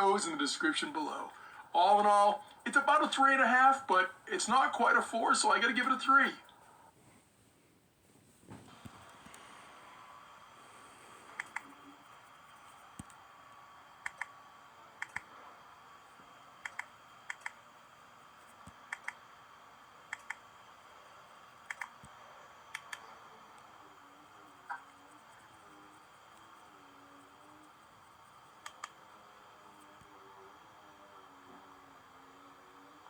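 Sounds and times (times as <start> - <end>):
low steady hum: 0.0 - 33.0
faint sharp clicks: 11.3 - 11.7, 14.0 - 14.4, 15.0 - 15.3, 16.6 - 17.6, 18.6 - 19.2, 20.1 - 20.4, 21.6 - 22.1, 22.7 - 23.0, 28.6 - 29.0.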